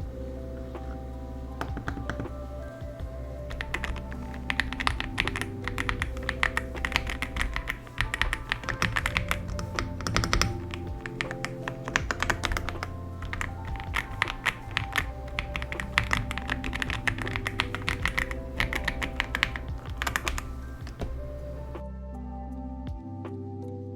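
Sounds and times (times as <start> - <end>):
light background music: 0.0 - 23.9
mechanical keyboard key clicks: 3.5 - 21.1.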